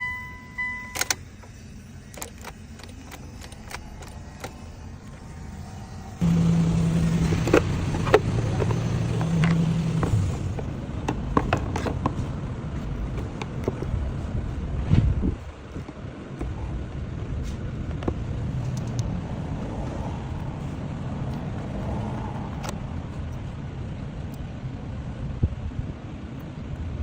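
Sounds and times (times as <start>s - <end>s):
short beeps: 0.0s - 1.2s
car engine running: 0.0s - 27.0s.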